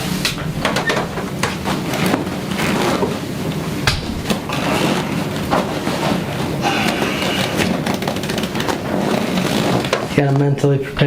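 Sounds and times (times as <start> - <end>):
table creaking and knocking: 0.0 - 10.4.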